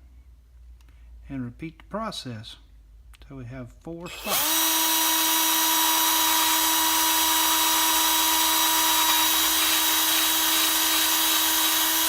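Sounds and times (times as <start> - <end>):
small electric drill whining: 4.1 - 12.0.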